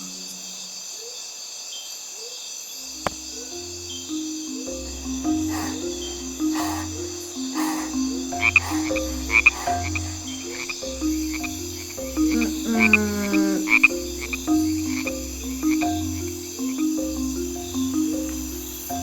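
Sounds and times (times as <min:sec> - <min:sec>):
frogs croaking: 0:00.0 - 0:19.0
long falling call: 0:12.1 - 0:13.9.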